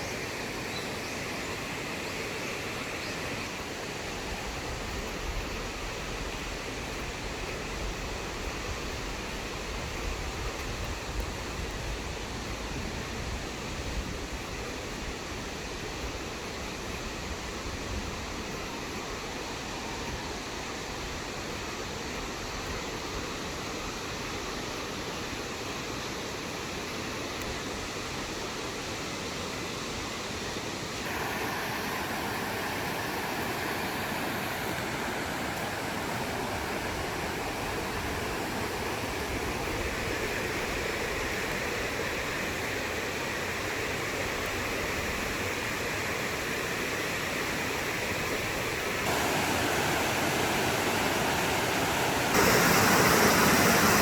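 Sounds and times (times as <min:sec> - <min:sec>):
stream water rushing over rocks: 0:13.2 - 0:54.0.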